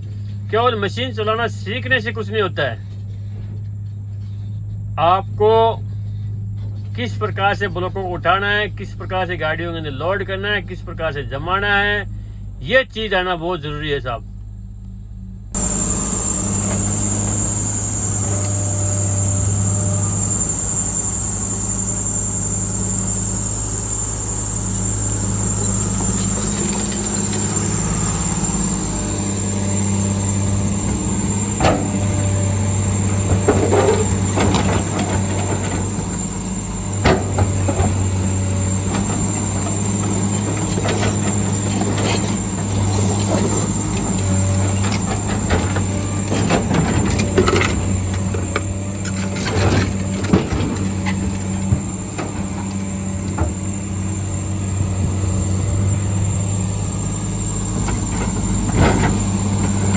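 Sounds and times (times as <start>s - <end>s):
steady high whine: 0.0s - 59.9s
excavator diesel engine running: 14.4s - 59.9s
sharp knocks and clanks: 15.6s - 55.9s, 57.5s - 59.9s.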